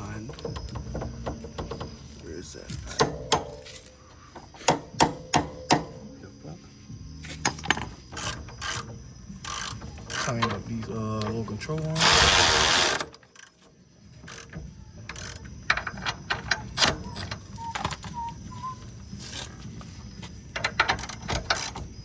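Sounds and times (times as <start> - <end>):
ratchet clicks: 7.7 - 17.9, 20.5 - 22.0.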